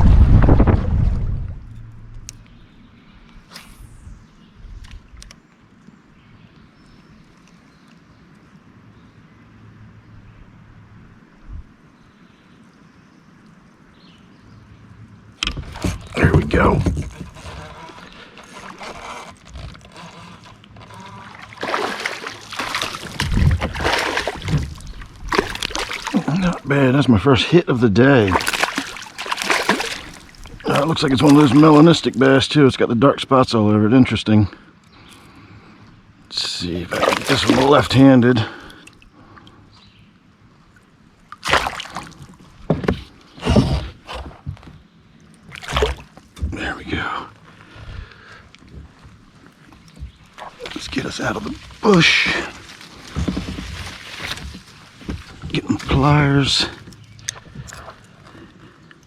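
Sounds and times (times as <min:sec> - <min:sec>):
low thump: 0:00.0 - 0:02.4
fish splashing at water surface: 0:21.2 - 0:26.8, 0:28.2 - 0:32.1, 0:36.9 - 0:38.0, 0:41.3 - 0:42.4, 0:45.5 - 0:46.2
knocks against a kayak: 0:41.4 - 0:44.8.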